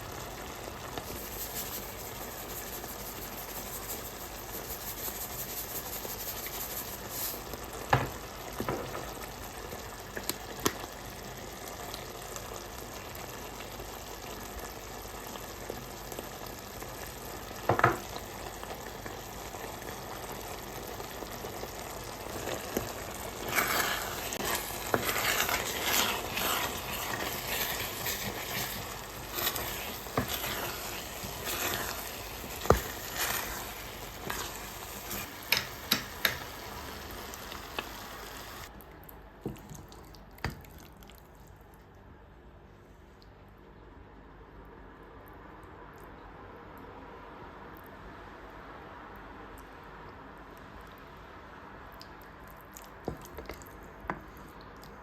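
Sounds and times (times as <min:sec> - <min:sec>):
food sizzling in a pot: 0:00.0 - 0:38.7
scraping and stirring: 0:00.8 - 0:07.6, 0:22.2 - 0:38.7.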